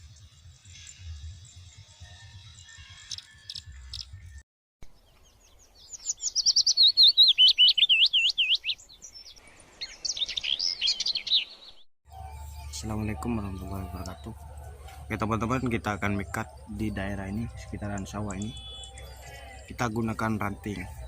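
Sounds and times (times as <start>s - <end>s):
bird sharp repeated chirps: 5.6s - 11.9s, 15.6s - 21.0s
faint music with low beat: 12.1s - 21.0s.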